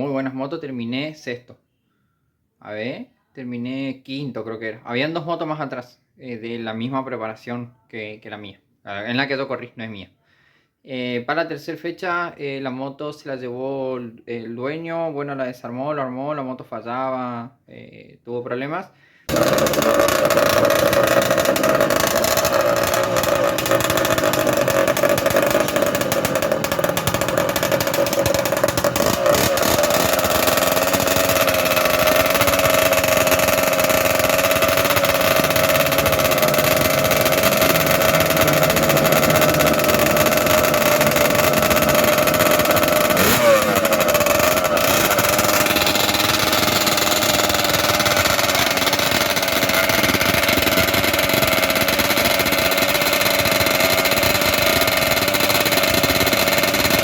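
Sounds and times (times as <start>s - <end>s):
small motorcycle engine revving high: 19.3s - 57.0s.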